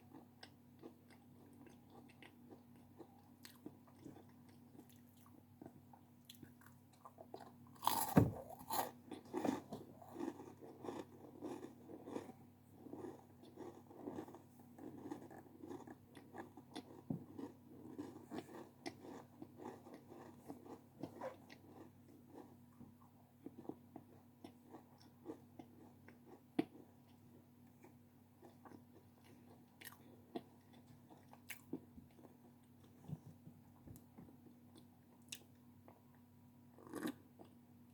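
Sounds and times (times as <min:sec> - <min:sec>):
chewing with small crackles: 0:00.0 - 0:37.9
crunching bite of snack: 0:06.3 - 0:20.8, 0:36.8 - 0:37.2.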